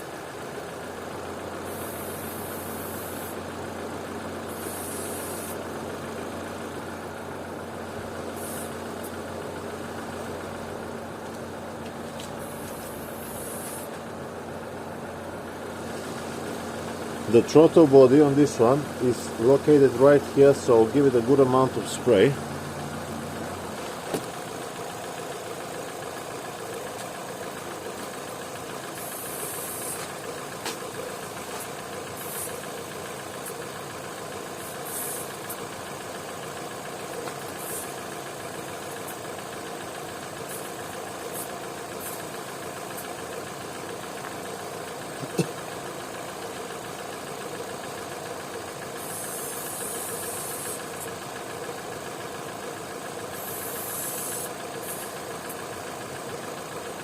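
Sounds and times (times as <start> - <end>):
petrol engine idling: 0.0 - 57.0
spray hissing: 1.7 - 3.4, 4.5 - 5.6, 8.4 - 9.1, 12.4 - 14.0, 28.9 - 33.6, 34.6 - 35.6, 37.4 - 38.1, 40.5 - 42.2, 49.0 - 51.1, 53.3 - 55.1.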